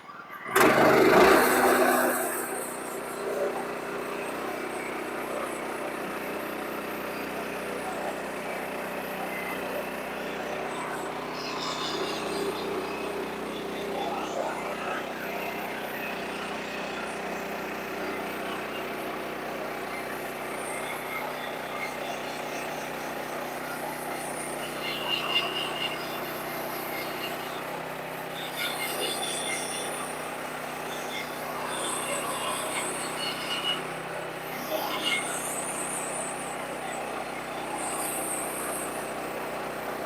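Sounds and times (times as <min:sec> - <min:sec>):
sawmill engine running: 0:00.2 - 0:40.0.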